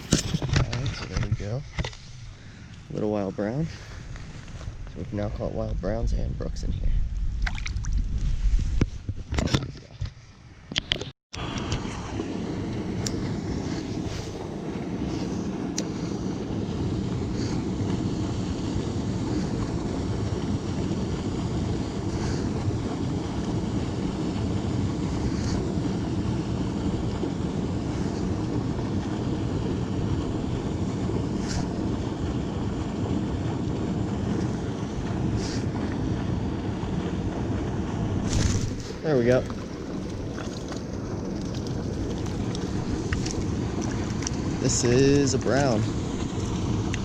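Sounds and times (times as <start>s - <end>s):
water rushing through spillway: 34.1s - 47.0s.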